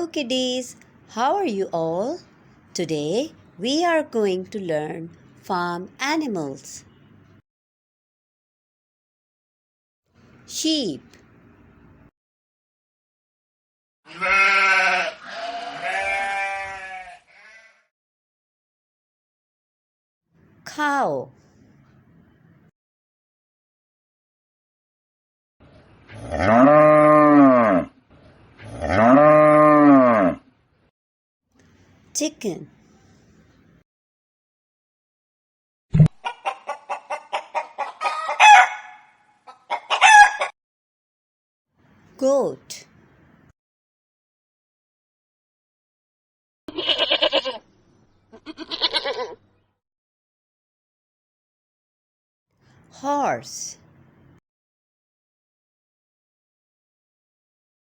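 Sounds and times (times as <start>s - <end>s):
sheep bleating: 14.1s - 17.8s, 46.7s - 47.6s, 48.3s - 49.4s
chicken clucking: 36.2s - 38.8s, 39.5s - 40.5s
chicken squawking cackle: 36.2s - 40.6s, 46.7s - 47.6s, 48.3s - 49.4s.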